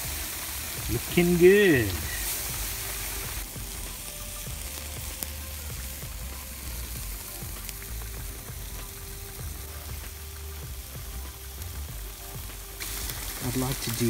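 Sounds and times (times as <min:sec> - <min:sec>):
campfire hissing and crackling: 0:00.0 - 0:14.0.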